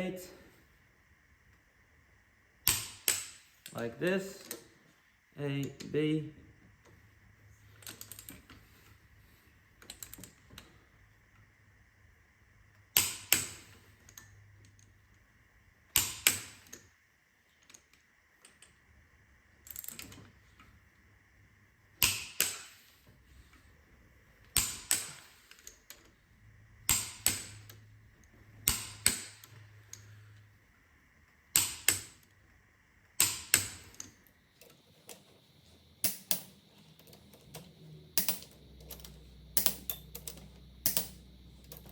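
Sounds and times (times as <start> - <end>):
torque wrench clicking: 26.9 - 27.8, 31.5 - 32.2, 36.0 - 36.6, 37.3 - 41.9.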